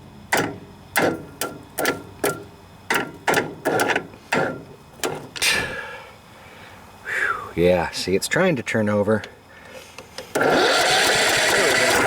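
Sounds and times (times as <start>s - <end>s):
starter motor jolting: 10.4s - 12.0s.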